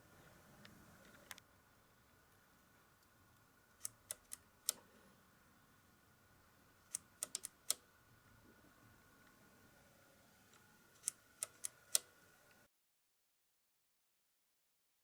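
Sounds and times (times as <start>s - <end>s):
sharp clicks: 3.8s - 4.8s, 6.9s - 7.8s, 10.5s - 12.1s.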